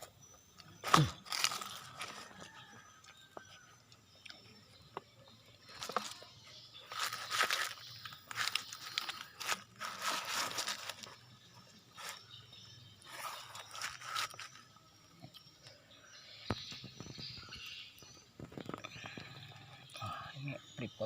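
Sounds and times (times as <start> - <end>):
person chewing crunchy food: 0.8 - 15.8.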